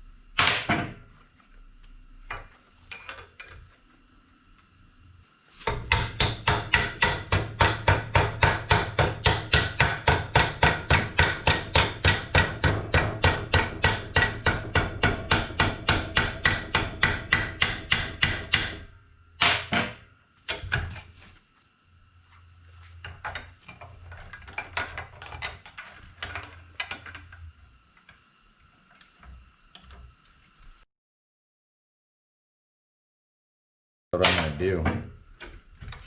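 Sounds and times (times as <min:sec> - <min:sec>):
hammer striking steel: 0:05.7 - 0:18.8.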